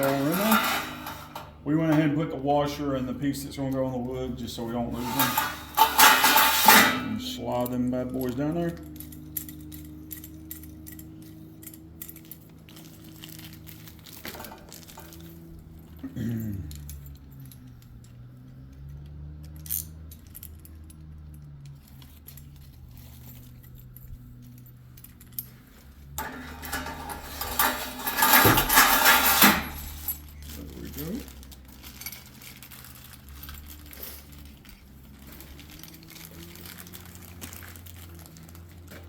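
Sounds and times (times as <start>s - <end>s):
metal rollers rattling on track: 0.0s - 9.1s, 26.1s - 39.0s.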